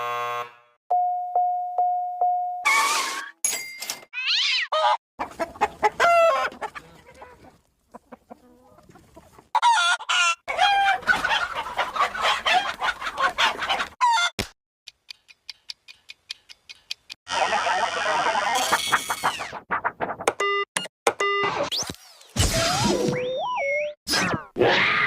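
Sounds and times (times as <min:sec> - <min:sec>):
cartoon chickens clucking and squawking: 0:04.2 - 0:14.4, 0:17.3 - 0:20.0.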